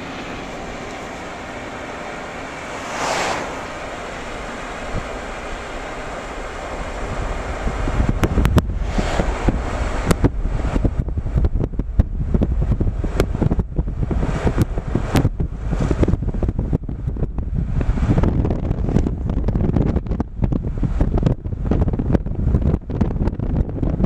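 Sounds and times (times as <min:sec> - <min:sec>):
ocean waves washing: 0:00.0 - 0:07.5
wind buffeting microphone: 0:00.0 - 0:24.0.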